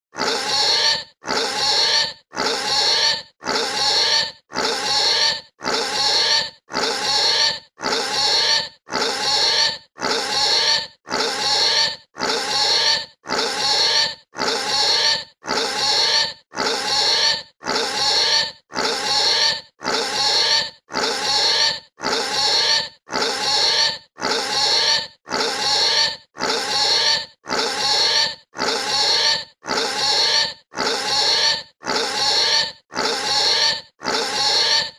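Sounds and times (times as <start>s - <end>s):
pig squealing: 0.2s - 34.9s.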